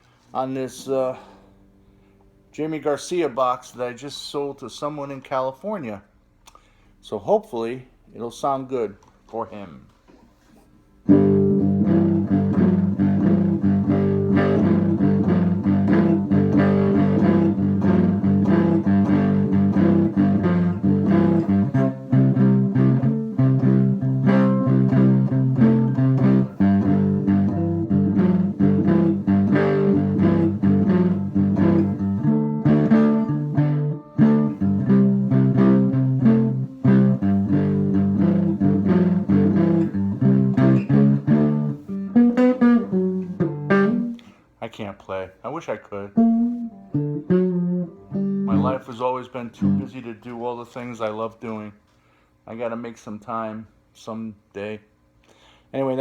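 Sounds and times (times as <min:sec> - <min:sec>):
plucked guitar notes: 0:11.0 - 0:44.4, 0:46.1 - 0:50.1.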